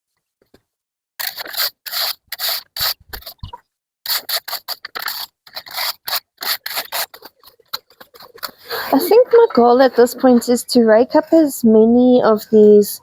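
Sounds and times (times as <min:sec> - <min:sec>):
rake scraping through wood chips: 0:01.2 - 0:03.4, 0:04.1 - 0:08.4.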